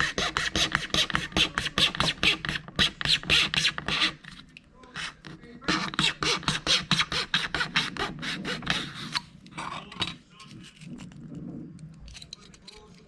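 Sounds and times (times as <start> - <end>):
tool rasping on plastic: 0.0 - 9.3.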